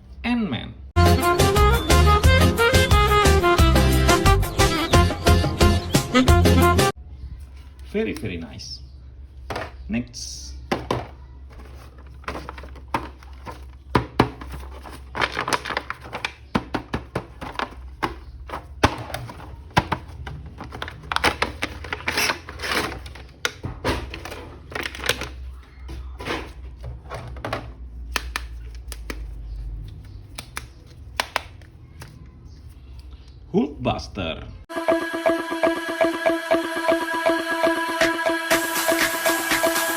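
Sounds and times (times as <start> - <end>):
packaging rustling: 10.9 - 29.4.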